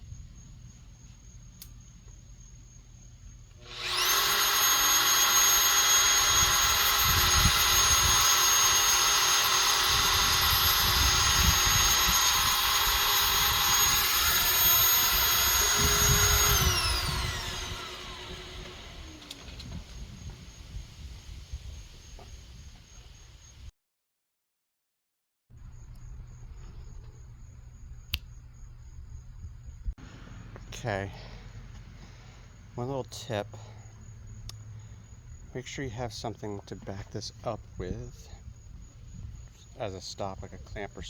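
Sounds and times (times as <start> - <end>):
power tool motor whine: 3.5 - 20.6.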